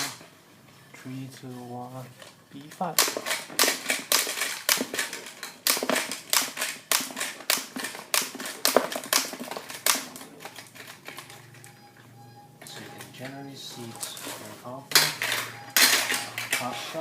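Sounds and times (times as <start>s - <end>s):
toy marble shooter firing: 3.0s - 11.3s, 14.9s - 16.8s
marble impacts: 13.8s - 17.0s.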